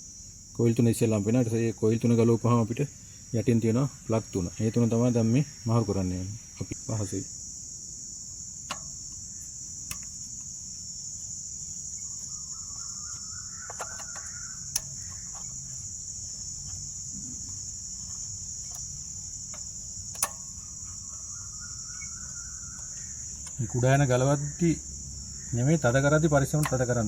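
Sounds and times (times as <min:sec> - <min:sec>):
crickets chirring: 0:00.0 - 0:27.0
sharp clicks: 0:08.6 - 0:11.3, 0:11.9 - 0:24.6, 0:25.8 - 0:27.0.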